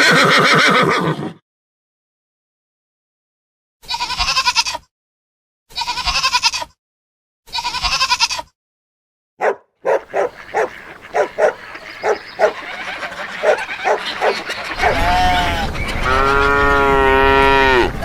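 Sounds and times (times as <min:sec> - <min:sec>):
goat bleating: 0:03.8 - 0:04.9, 0:05.7 - 0:06.8, 0:07.5 - 0:08.5, 0:10.1 - 0:16.7
dog yapping: 0:09.4 - 0:15.2.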